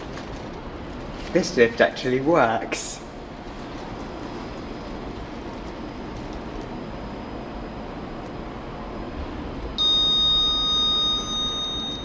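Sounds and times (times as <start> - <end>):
low background hum: 0.0 - 12.0
high-pitched electronic buzzer: 9.8 - 12.0.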